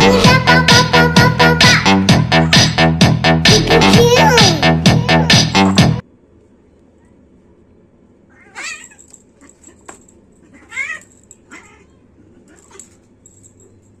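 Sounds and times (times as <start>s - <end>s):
cat meowing: 8.3s - 9.1s, 10.5s - 12.8s.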